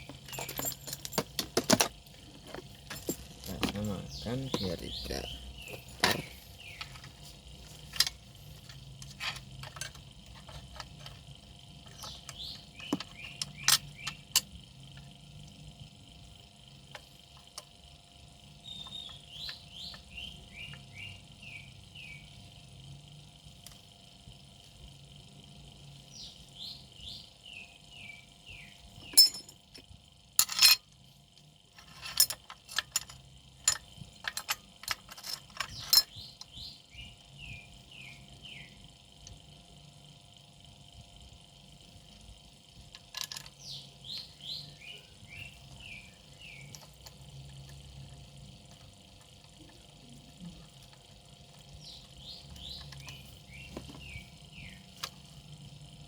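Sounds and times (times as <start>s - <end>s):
metal tools clinking: 0.0s - 14.5s, 29.0s - 30.9s, 31.7s - 36.2s, 43.0s - 44.3s
faint steady high whine: 0.0s - 56.0s.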